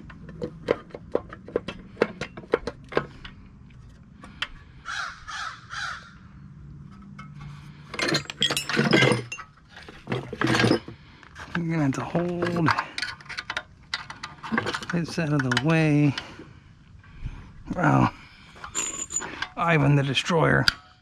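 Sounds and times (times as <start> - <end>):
metal parts and tools clinking: 6.9 - 16.3, 18.6 - 21.0.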